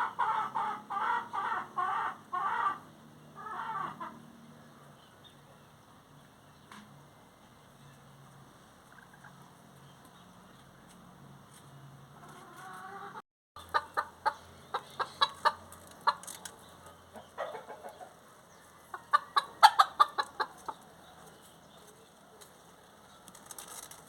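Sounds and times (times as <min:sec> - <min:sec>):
chickens clucking: 0:00.0 - 0:04.2, 0:08.8 - 0:09.6, 0:12.2 - 0:22.5.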